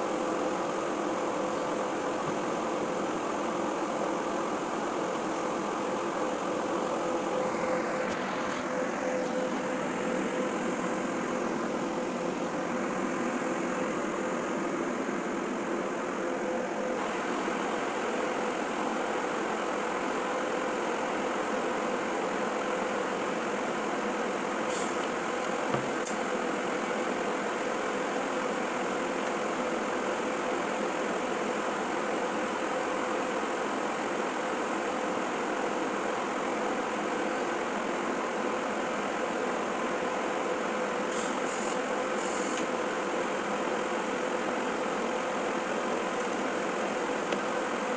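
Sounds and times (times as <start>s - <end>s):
welding arc hissing and humming: 41.1s - 43.1s.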